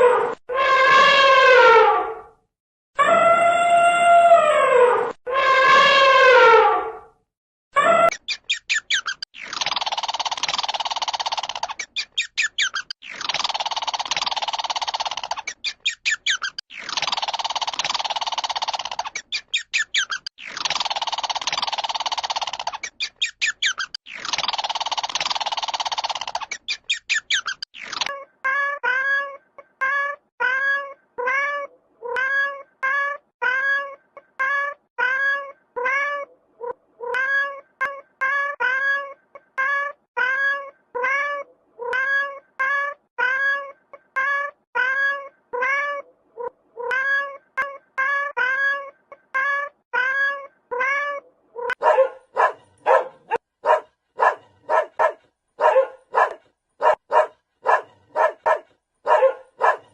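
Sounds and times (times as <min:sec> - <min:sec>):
cat meowing: 0:28.1 - 0:51.8
dog barking: 0:51.8 - 0:59.9.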